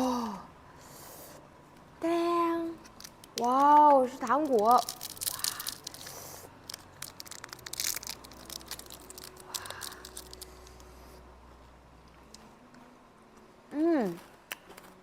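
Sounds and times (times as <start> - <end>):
plastic wrapper crinkling and tearing: 2.8 - 10.9.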